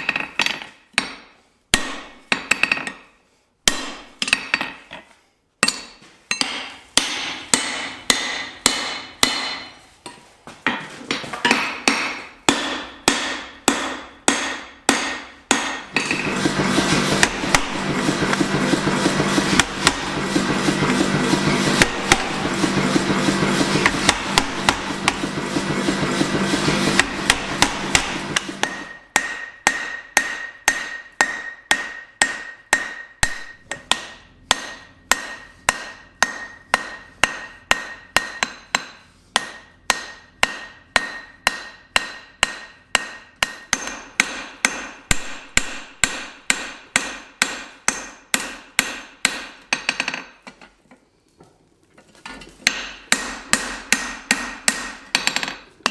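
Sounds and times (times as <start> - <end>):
hammer striking steel on anvil: 0.0 - 4.9, 5.6 - 50.6, 52.6 - 55.9
mechanical hum: 3.3 - 55.9.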